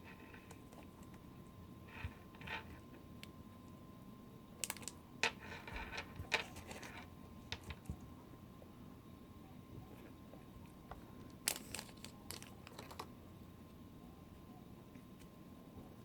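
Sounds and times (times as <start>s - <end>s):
packaging rustling: 11.4s - 13.1s.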